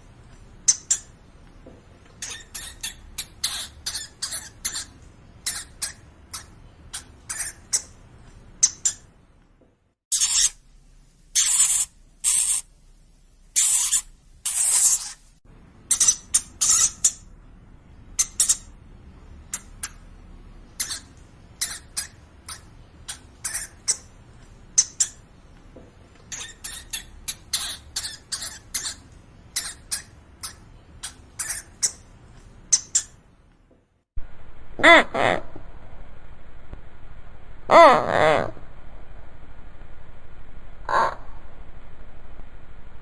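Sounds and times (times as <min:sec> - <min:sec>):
hamster squeaking: 0:02.2 - 0:08.0, 0:10.1 - 0:10.6, 0:11.4 - 0:12.7, 0:13.6 - 0:15.2, 0:26.3 - 0:32.0
hamster hissing: 0:11.4 - 0:12.7, 0:13.6 - 0:15.2.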